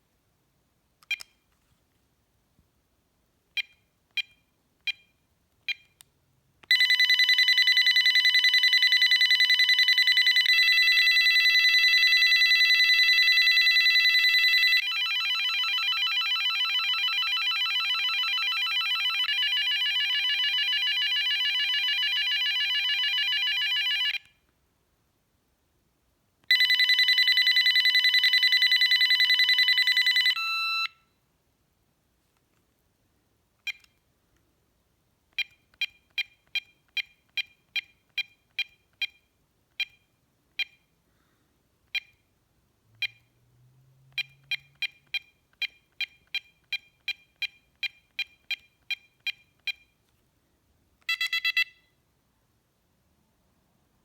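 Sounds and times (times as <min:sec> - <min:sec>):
electronic phone ringtone: 0:06.7 - 0:24.3, 0:26.5 - 0:31.0, 0:51.1 - 0:51.9.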